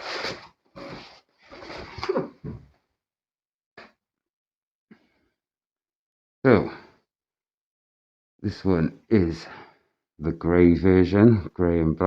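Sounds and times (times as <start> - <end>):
packaging sliding and rustling: 0.0 - 2.1.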